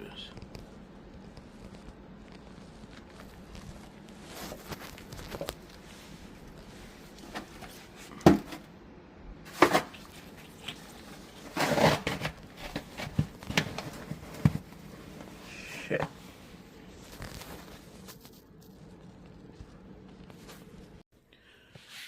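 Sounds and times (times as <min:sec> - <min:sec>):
snow shovel crunching and scraping: 0:11.4 - 0:13.1.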